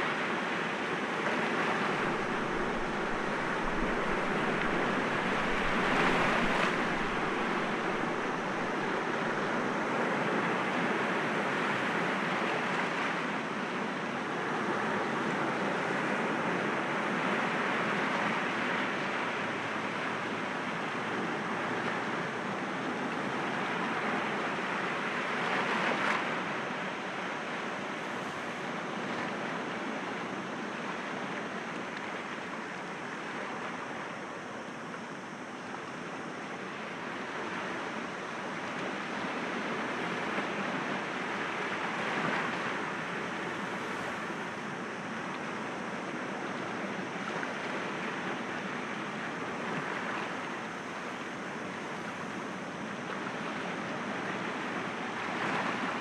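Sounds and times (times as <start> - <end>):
waves breaking against rocks: 1.4 - 9.2.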